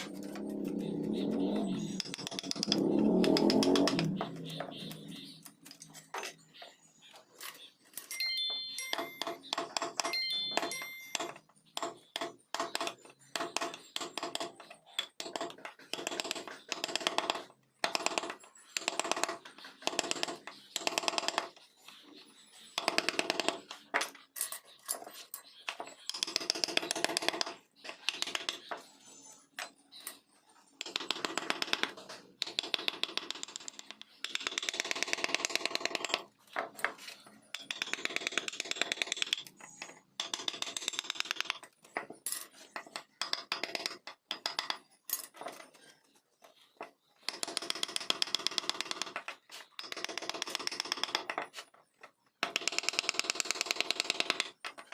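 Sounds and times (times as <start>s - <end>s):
carving tool cutting wood: 0.0s - 4.1s.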